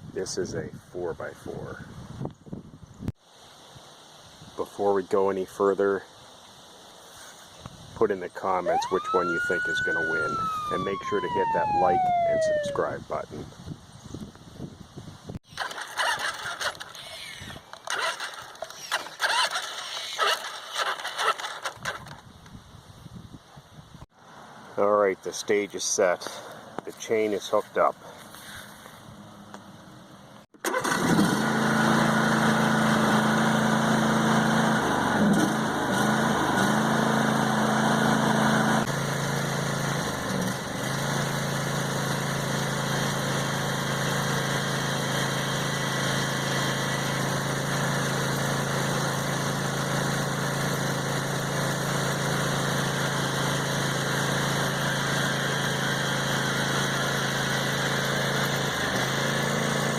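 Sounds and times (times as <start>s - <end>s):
higher-pitched engine layer: 8.4s - 13.1s
garden tractor engine running: 15.4s - 22.2s, 30.6s - 59.9s.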